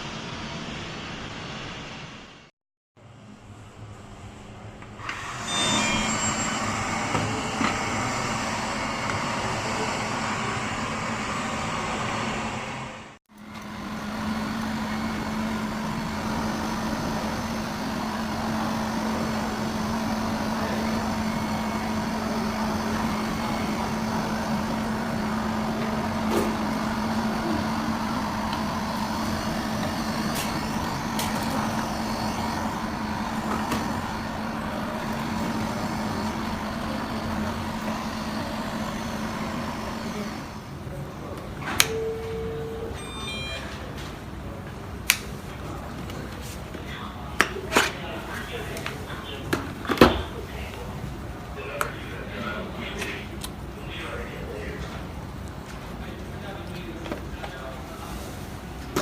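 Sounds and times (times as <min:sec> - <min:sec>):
robot vacuum cleaner whirring: 0:05.0 - 0:40.8.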